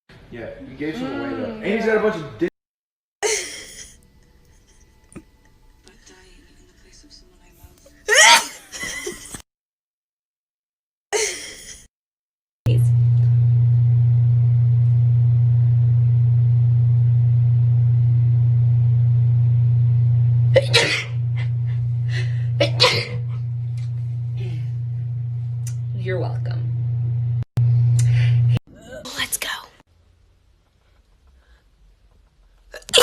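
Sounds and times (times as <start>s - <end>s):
loud steady low hum: 12.7s - 28.6s
person sneezing: 20.6s - 21.1s, 22.6s - 23.3s.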